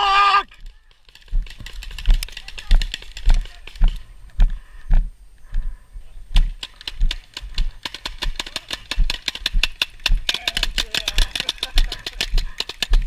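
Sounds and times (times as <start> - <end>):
paintball markers firing: 0.8 - 4.1, 6.3 - 13.0.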